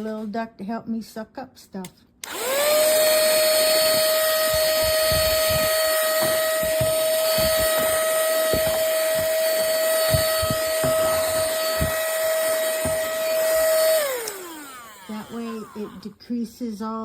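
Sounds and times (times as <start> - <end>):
handheld vacuum running: 2.2 - 16.2
nozzle knocking: 3.6 - 14.0.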